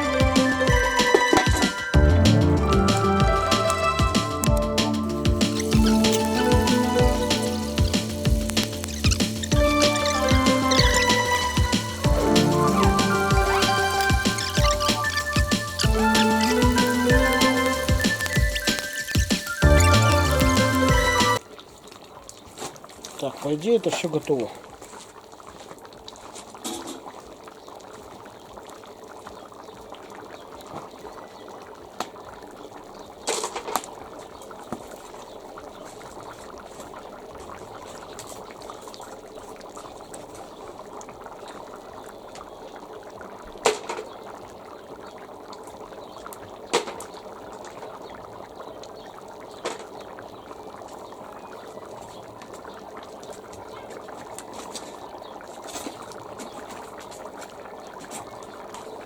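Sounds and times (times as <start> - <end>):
stew bubbling: 2.0 - 33.2.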